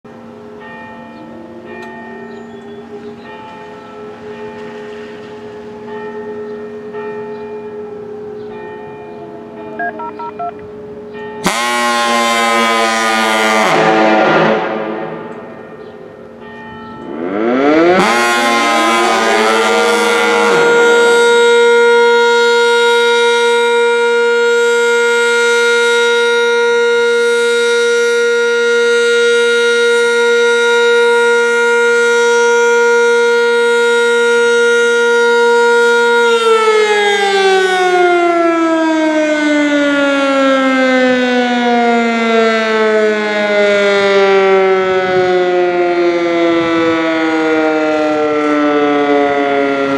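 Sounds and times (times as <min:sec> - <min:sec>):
fire siren winding: 0:09.8 - 0:10.6.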